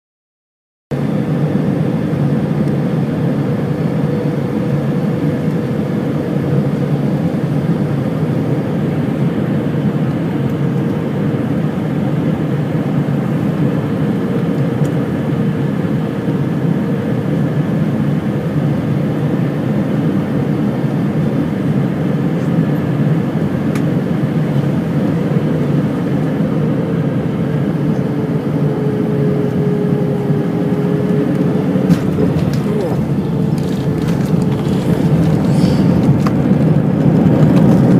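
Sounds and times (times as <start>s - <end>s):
jet engines and airflow rush: 0.9s - 37.9s
held engine tone: 24.2s - 37.9s.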